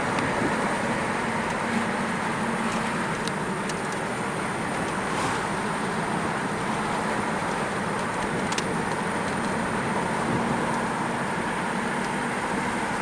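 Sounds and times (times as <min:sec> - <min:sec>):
car tyre and engine noise: 0:00.0 - 0:13.0.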